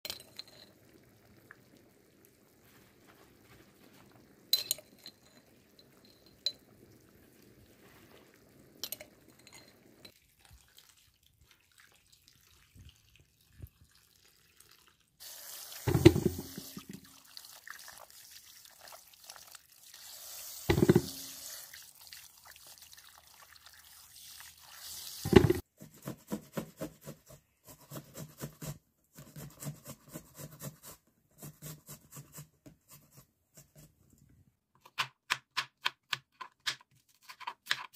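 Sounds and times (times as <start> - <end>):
water running and splashing: 10.3 - 25.6.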